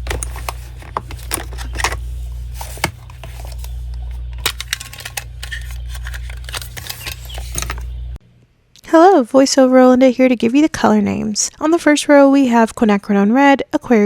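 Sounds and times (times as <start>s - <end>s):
painting supplies clicking and tapping: 0.0s - 2.0s, 2.6s - 7.9s
steady low hum: 0.0s - 10.8s.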